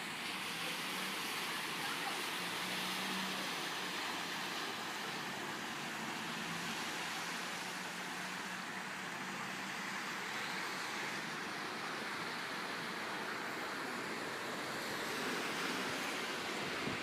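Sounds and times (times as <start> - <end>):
fast-flowing water rushing: 0.0 - 17.0.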